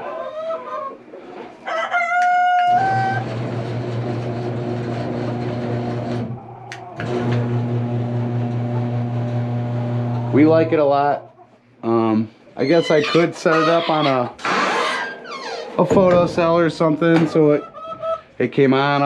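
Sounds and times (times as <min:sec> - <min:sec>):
garage door opener motor humming: 0:02.7 - 0:06.4, 0:07.0 - 0:10.4.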